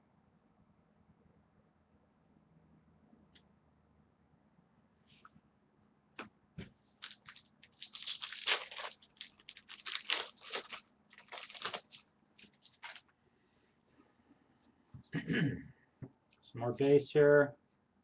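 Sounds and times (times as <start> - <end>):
card wrapper crinkling and tearing: 7.0 - 13.1.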